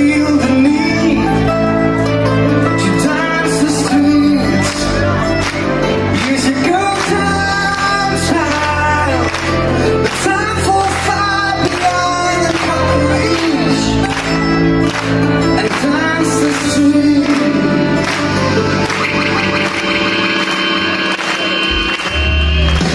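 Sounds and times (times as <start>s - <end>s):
lead vocal singing: 0.0s - 1.6s, 2.8s - 5.2s, 6.1s - 14.0s, 15.6s - 18.4s
live folk-pop band: 0.0s - 22.9s.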